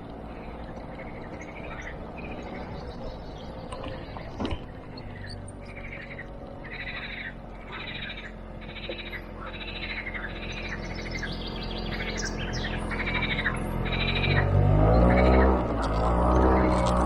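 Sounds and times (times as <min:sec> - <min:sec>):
low steady hum: 0:00.0 - 0:17.0
animal rasping calls: 0:05.0 - 0:10.9, 0:11.9 - 0:17.0.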